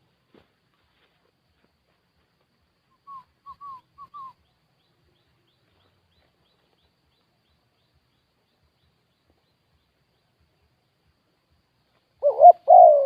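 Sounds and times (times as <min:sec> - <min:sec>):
faint high chirp: 0:02.9 - 0:10.3
dove cooing: 0:12.2 - 0:13.0.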